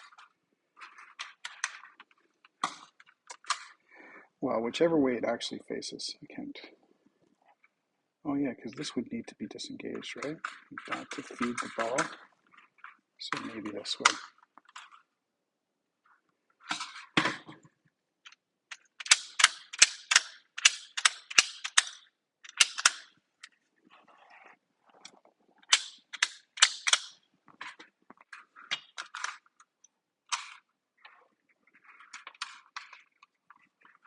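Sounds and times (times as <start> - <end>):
plastic clicks and snaps: 18.3 - 23.1, 25.0 - 29.5.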